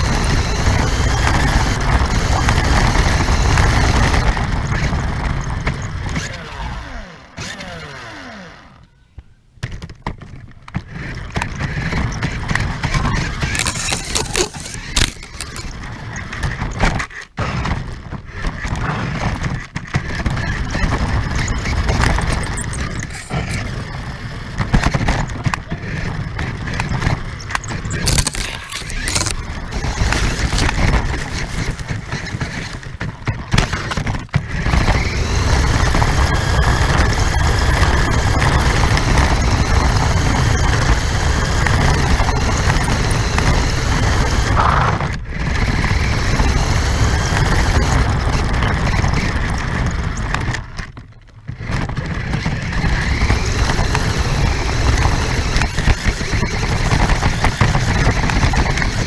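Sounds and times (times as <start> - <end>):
radio-controlled car motor whine: 0.0 - 8.9, 20.1 - 50.4, 52.1 - 59.0.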